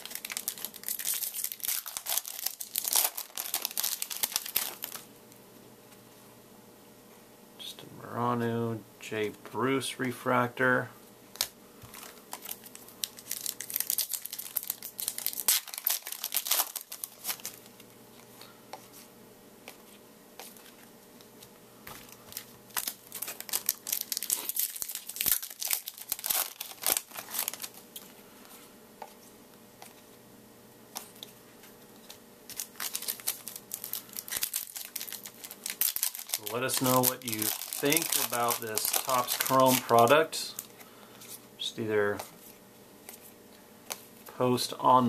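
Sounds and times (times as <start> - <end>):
foil wrappers tearing and crinkling: 0.0 - 5.0, 11.4 - 17.7, 21.9 - 28.1, 32.0 - 40.7
cards being handled: 11.3 - 30.0, 30.9 - 41.4.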